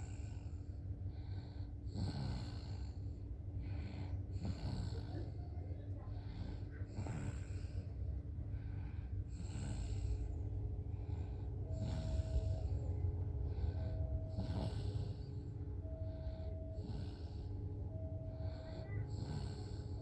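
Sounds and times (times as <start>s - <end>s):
toddler snoring: 0.0s - 0.6s, 1.2s - 5.4s, 6.1s - 20.0s.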